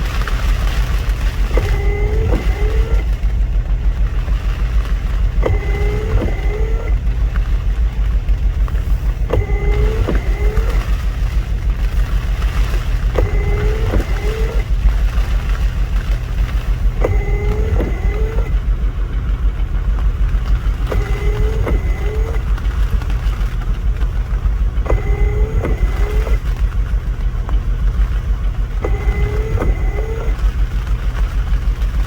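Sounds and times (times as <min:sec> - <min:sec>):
vehicle and wind rumble: 0:00.0 - 0:32.0
windshield wipers sweeping: 0:00.0 - 0:32.0.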